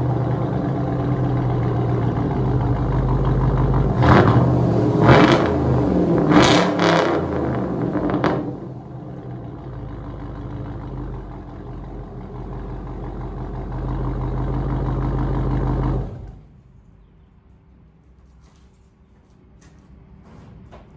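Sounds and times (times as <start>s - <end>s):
car engine revving and idling: 0.0s - 16.5s.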